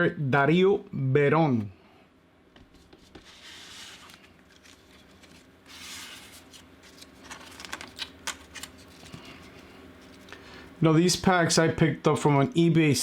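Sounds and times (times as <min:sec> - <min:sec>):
paper stickers rustling: 0:02.7 - 0:10.4.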